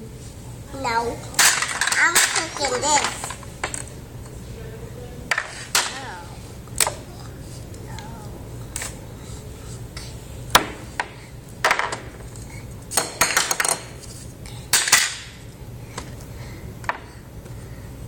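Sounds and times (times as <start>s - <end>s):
toy cookware clattering: 1.4s - 3.4s.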